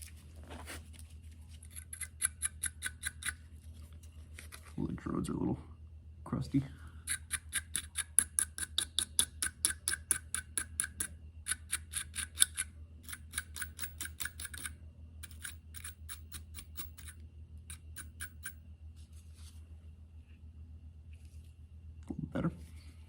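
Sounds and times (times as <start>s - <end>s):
steady low hum: 0.0s - 23.0s
rapid metallic clicking of hand tool: 1.7s - 3.4s, 7.1s - 18.6s.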